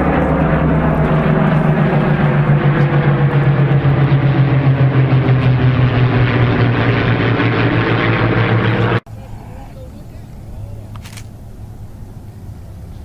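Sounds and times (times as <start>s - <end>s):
propeller aircraft engines: 0.0s - 13.0s.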